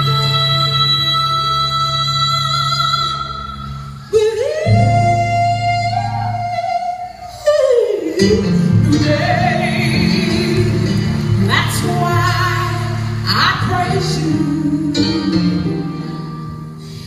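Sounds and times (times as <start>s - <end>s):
women singing gospel song: 7.9s - 15.2s
instrumental accompaniment: 8.1s - 17.0s.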